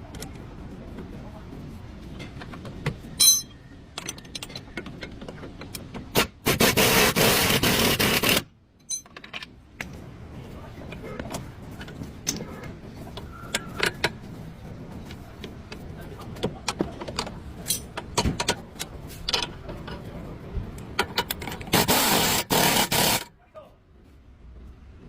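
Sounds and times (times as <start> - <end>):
tools clicking and knocking on metal: 2.2 - 6.1, 8.8 - 9.9, 16.4 - 20.0.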